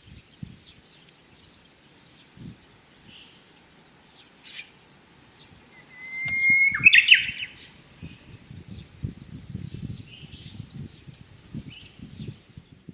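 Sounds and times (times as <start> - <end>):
bird whistling song: 5.7 - 8.2
faint short bird chirps: 5.8 - 7.7.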